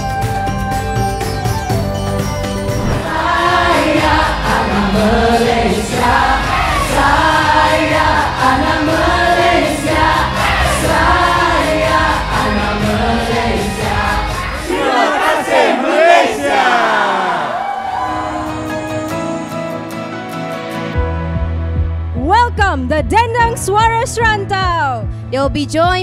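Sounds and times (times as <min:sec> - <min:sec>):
instrumental accompaniment with bass: 0:00.0 - 0:14.8, 0:18.0 - 0:26.0
choir singing: 0:02.8 - 0:18.8.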